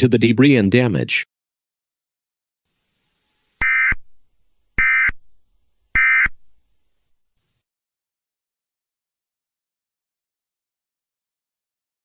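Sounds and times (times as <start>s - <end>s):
buzzy digital chirps: 2.8s - 4.0s, 4.8s - 5.2s, 6.0s - 6.4s.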